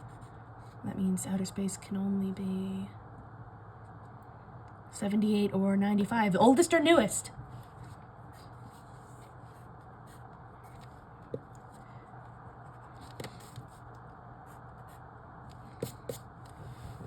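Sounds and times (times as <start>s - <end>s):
low room hum: 0.0s - 17.0s
pen writing on paper: 15.7s - 16.2s.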